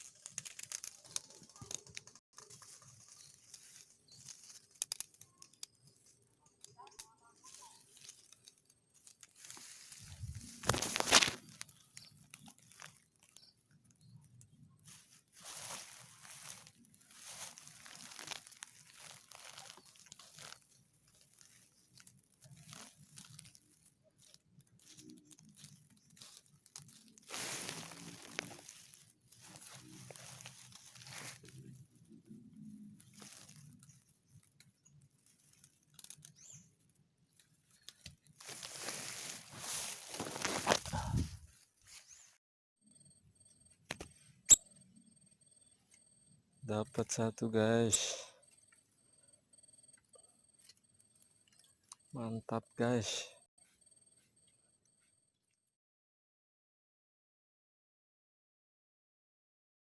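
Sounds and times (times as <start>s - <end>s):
faint rustling and crackling: 0.0s - 42.4s
faint high chirp: 36.2s - 53.0s.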